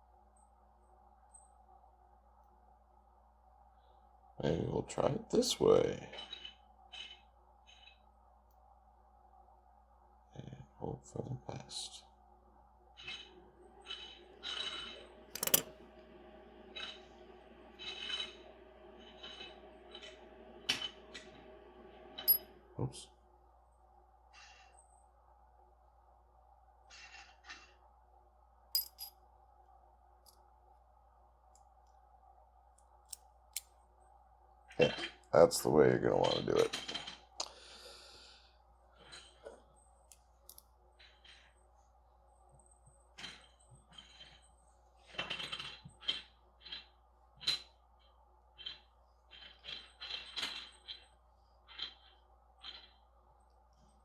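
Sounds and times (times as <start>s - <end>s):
metallic clicks with ring: 15.4s - 15.7s, 22.2s - 22.4s, 28.8s - 29.1s.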